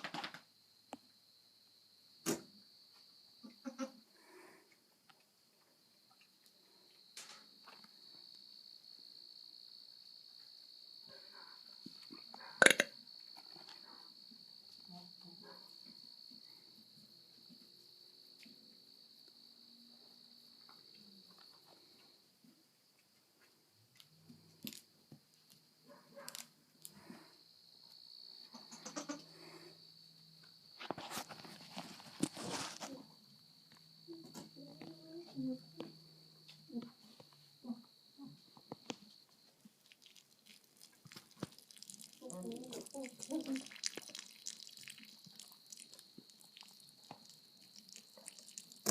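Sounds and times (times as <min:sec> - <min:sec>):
goat bleating: 0:03.4 - 0:04.0, 0:28.5 - 0:29.3
crickets trilling: 0:05.8 - 0:22.1, 0:25.6 - 0:48.9
faint rustling: 0:30.8 - 0:33.1.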